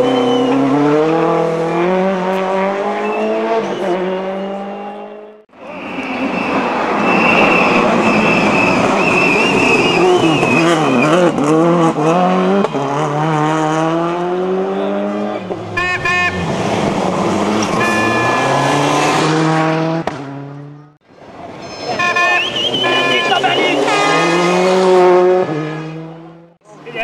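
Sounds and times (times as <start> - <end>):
rally car engine at full throttle: 0.0 - 27.0
tyre squeal: 5.6 - 11.3.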